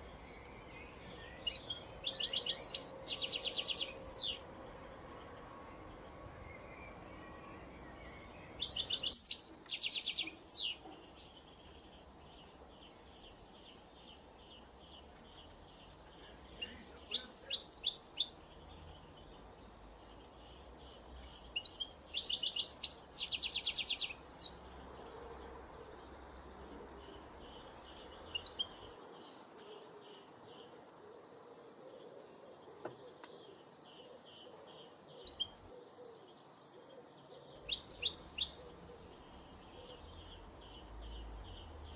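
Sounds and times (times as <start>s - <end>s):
songbird loud bright song: 0.0s - 41.9s.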